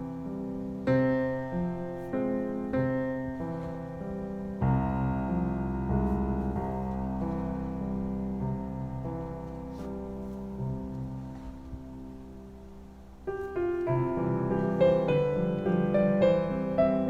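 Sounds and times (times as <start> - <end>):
piano chords: 0.0 - 17.0.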